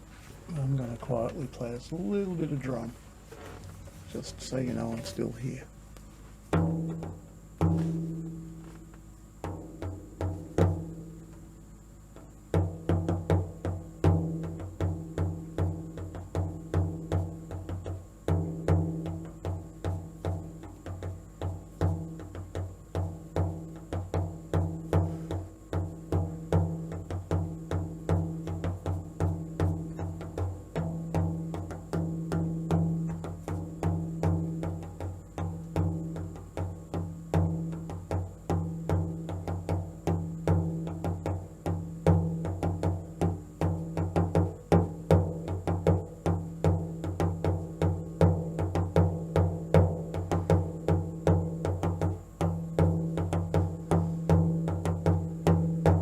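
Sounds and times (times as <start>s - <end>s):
drum booming in slow rhythm: 6.4s - 56.0s.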